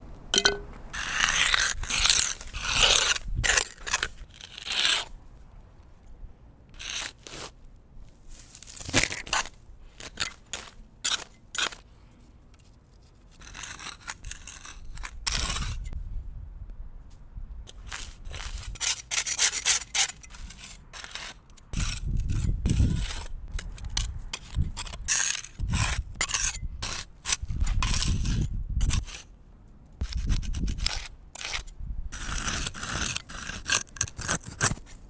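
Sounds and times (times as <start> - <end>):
grass scraped from concrete: 6.8 - 11.8, 17.7 - 29.2, 30.0 - 35.0.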